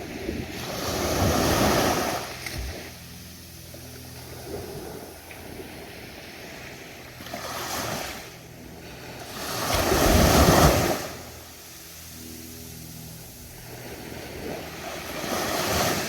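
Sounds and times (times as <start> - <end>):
steady surf: 0.0 - 16.0
ocean waves crashing: 8.9 - 11.9, 13.5 - 16.0.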